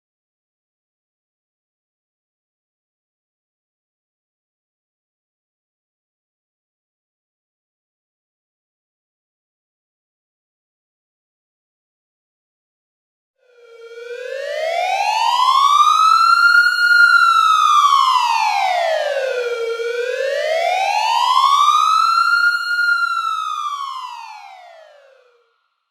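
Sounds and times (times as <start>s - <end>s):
siren wailing: 13.4s - 25.4s.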